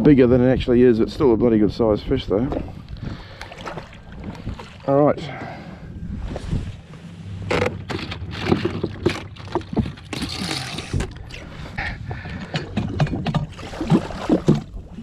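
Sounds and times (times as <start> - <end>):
wind and water against hull: 0.0 - 15.0
short watery rush: 2.3 - 5.9, 8.4 - 15.0
knocks and thuds on jet ski: 7.4 - 15.0.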